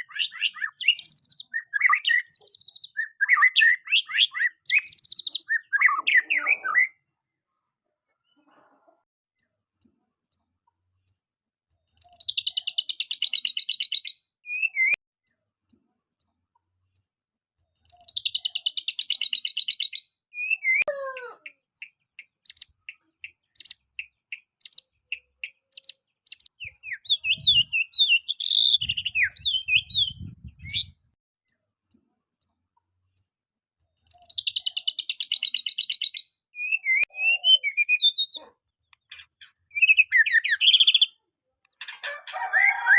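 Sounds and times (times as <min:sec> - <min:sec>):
bird sharp chirps: 0:00.0 - 0:07.0, 0:11.1 - 0:32.6, 0:33.2 - 0:42.0
bird singing rattling trills: 0:00.1 - 0:06.2, 0:11.1 - 0:16.3, 0:17.0 - 0:20.6, 0:22.4 - 0:30.9, 0:31.5 - 0:36.1
bird whistled notes: 0:36.6 - 0:38.3.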